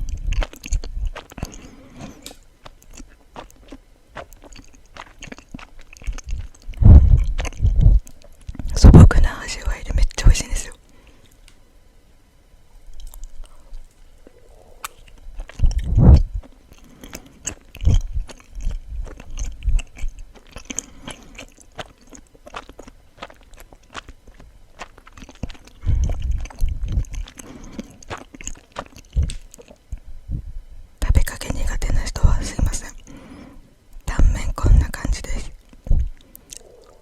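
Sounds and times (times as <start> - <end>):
close-miked chewing: 0.0 - 11.4, 12.9 - 30.0, 31.0 - 33.4, 34.0 - 37.0
low thumps: 6.8 - 8.0, 15.6 - 16.4, 35.9 - 36.1
mouth clicks: 34.8 - 37.0.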